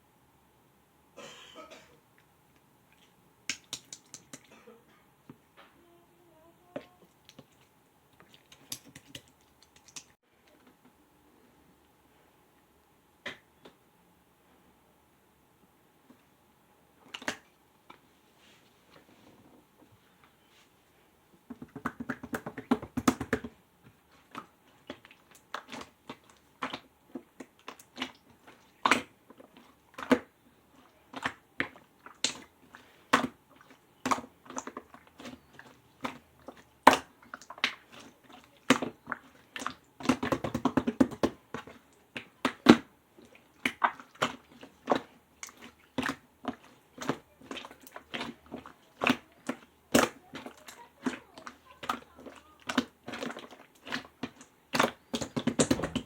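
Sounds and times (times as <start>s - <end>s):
slime squishing and popping: 24.3s - 30.4s, 31.1s - 32.5s, 33.1s - 56.0s.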